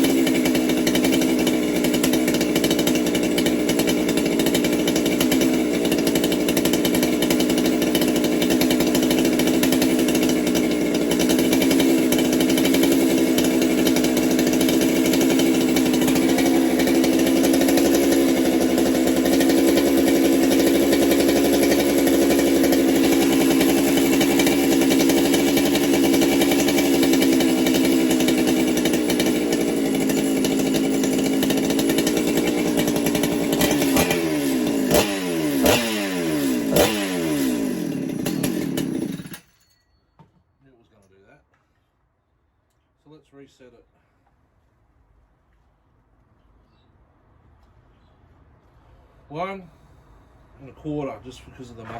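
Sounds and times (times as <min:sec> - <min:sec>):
chainsaw running and revving: 0:00.0 - 0:39.6.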